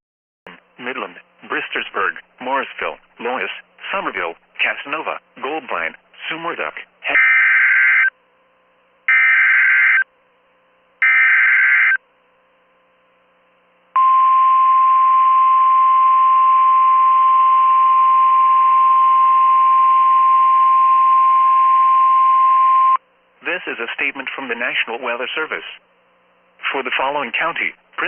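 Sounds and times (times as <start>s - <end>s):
screeching data tones: 7.1s - 8.1s, 9.1s - 10.1s, 11.0s - 12.0s
steady warning alarm tone: 7.1s - 8.1s, 9.1s - 10.1s, 11.0s - 12.0s.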